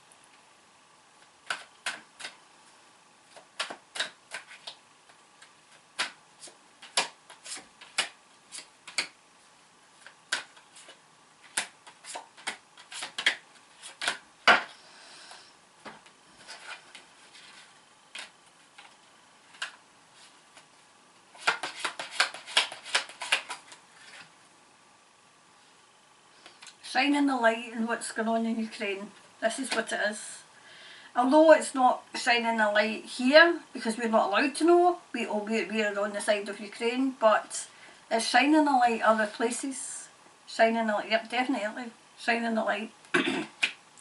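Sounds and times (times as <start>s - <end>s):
cards clicking and tapping: 1.4s - 2.4s, 3.3s - 4.8s, 5.4s - 9.2s, 10.0s - 14.7s, 15.8s - 19.8s, 21.4s - 24.2s.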